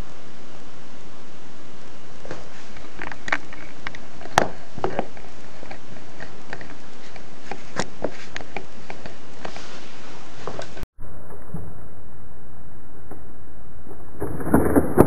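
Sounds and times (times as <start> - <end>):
steady hiss: 0.0 - 10.8.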